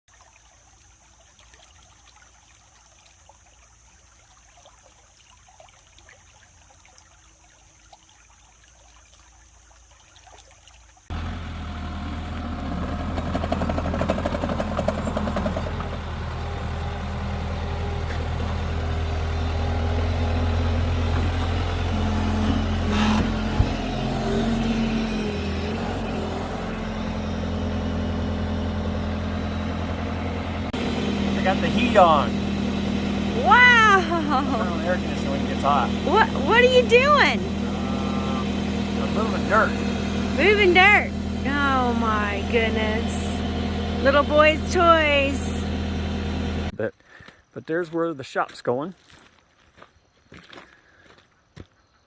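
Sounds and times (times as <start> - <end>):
skid steer engine humming: 11.1 - 46.8.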